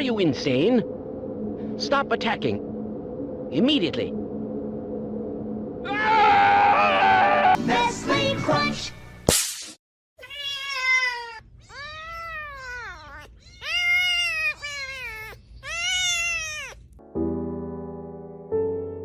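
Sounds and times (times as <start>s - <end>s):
cat meowing: 10.2s - 17.0s
piano music: 17.0s - 19.0s.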